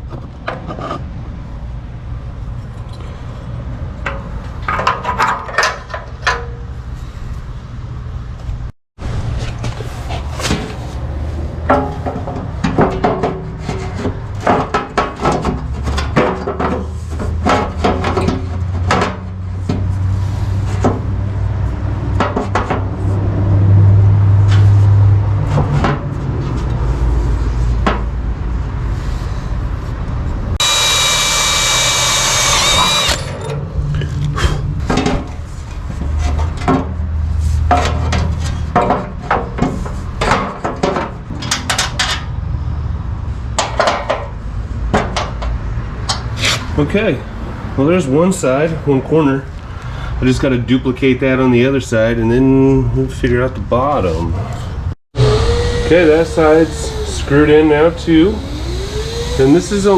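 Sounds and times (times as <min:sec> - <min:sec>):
power drill whining: 0:30.6 - 0:33.6, 0:55.2 - 0:59.9.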